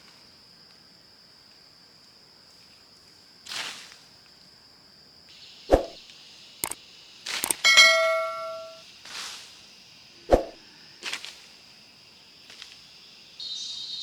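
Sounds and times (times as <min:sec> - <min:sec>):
insects chirring: 0:00.0 - 0:14.0
sharp knocks: 0:07.4 - 0:08.8
metal object ringing: 0:07.5 - 0:08.8.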